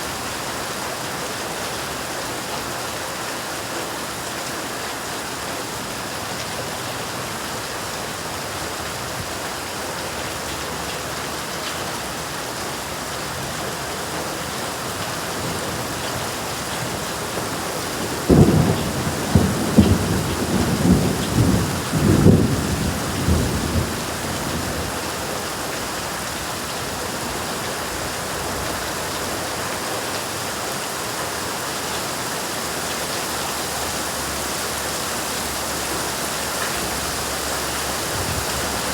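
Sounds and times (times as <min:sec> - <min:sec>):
steady rain falling: 0:00.0 - 0:38.9
thunder rumbling: 0:15.3 - 0:29.4.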